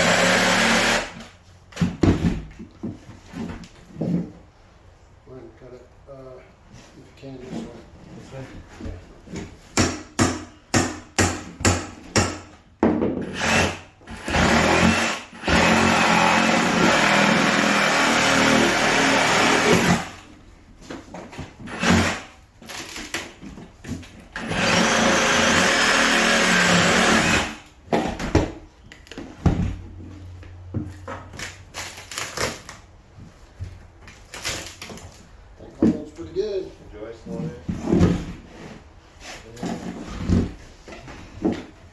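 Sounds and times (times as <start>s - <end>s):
power saw cutting floor: 0.0s - 1.3s, 13.3s - 20.2s, 24.4s - 27.6s.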